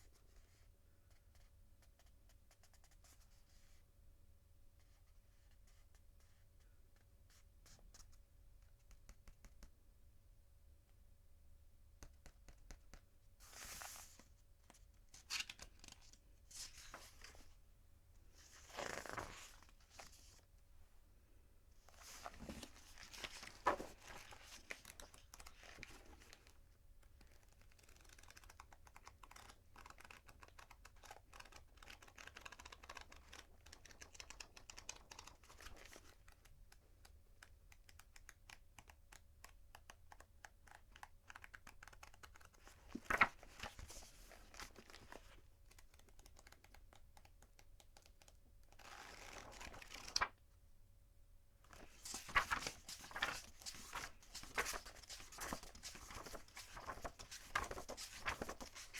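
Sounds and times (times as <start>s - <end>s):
book page turning: 13.4s - 14.2s, 15.2s - 17.5s, 18.4s - 20.4s, 21.9s - 26.5s, 42.0s - 45.4s, 48.8s - 50.4s, 51.7s - 58.9s
paper ticks and rustles: 21.9s - 50.3s, 51.7s - 58.9s.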